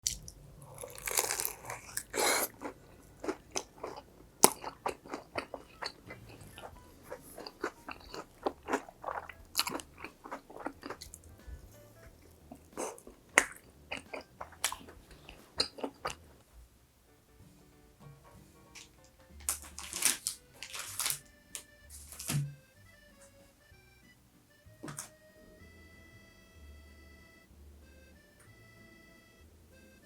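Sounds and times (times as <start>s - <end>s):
crunchy food chewing: 0.0s - 16.4s, 18.8s - 22.5s.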